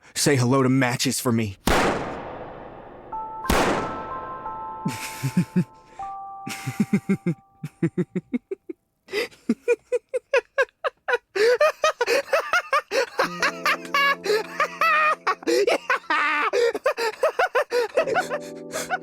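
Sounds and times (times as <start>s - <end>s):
sustained music chords: 2.8s - 7.8s
person laughing in bursts: 4.8s - 5.8s, 6.5s - 19.0s.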